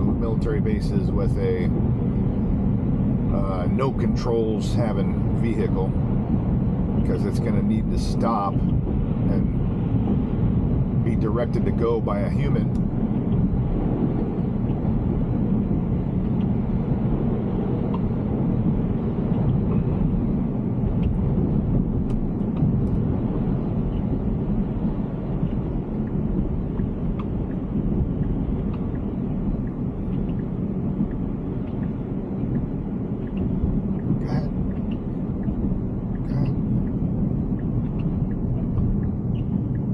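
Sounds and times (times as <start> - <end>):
road and tyre noise: 0.0 - 39.9.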